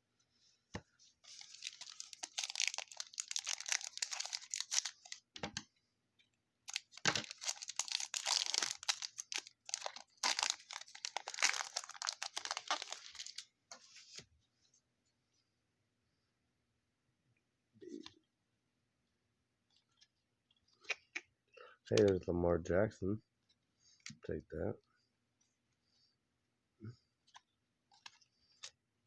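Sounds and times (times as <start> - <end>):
card pack wrapper crinkling: 1.2 - 5.2, 6.7 - 13.4.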